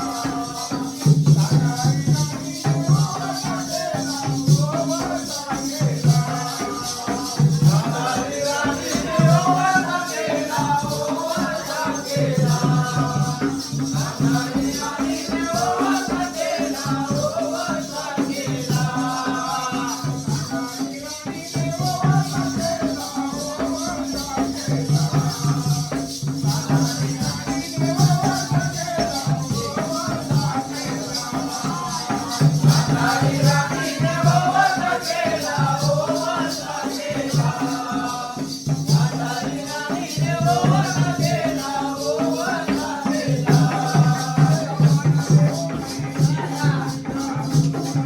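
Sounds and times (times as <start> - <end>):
dholki drum beat: 0.0 - 48.0
high jingling percussion: 0.0 - 48.0
man singing: 0.0 - 48.0.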